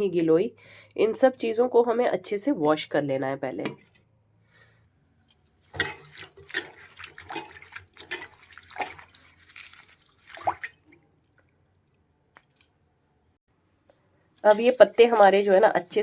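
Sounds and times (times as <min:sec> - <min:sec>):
splashes and drips of water: 0:05.6 - 0:12.7, 0:14.4 - 0:16.0.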